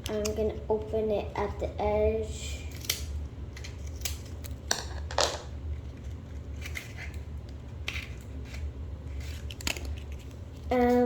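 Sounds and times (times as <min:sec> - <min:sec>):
scissors snipping plastic: 0:00.0 - 0:00.5, 0:02.7 - 0:04.8, 0:09.3 - 0:11.0.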